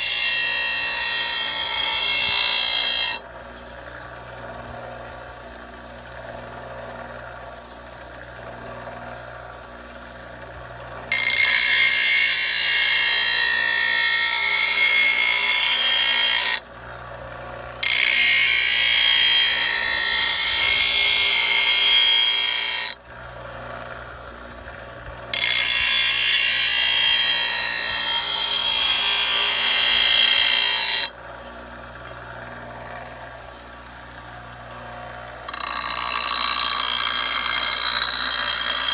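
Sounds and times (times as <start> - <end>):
grinder sharpening metal blade: 0.0 - 3.2, 11.1 - 16.6, 17.8 - 23.0, 25.4 - 31.1, 35.5 - 38.9
grinder spinning freely humming: 0.0 - 38.9.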